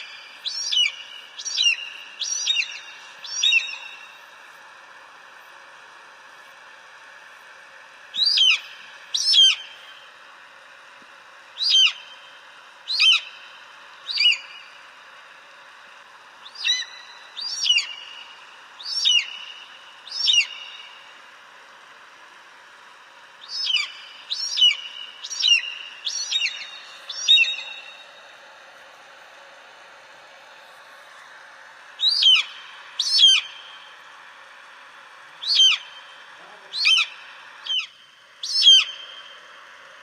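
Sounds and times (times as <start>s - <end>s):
eagle crying: 36.4s - 37.1s.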